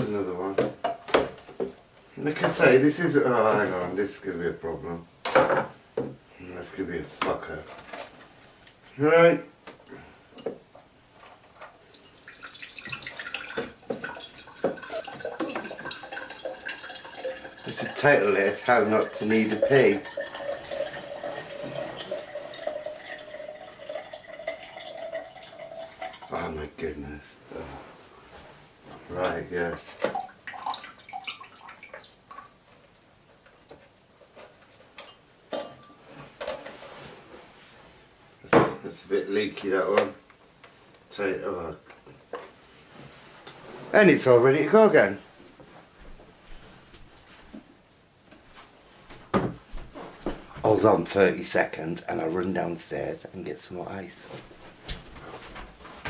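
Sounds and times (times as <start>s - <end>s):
water splashing into a glass: 12.0s - 26.3s, 30.2s - 32.5s.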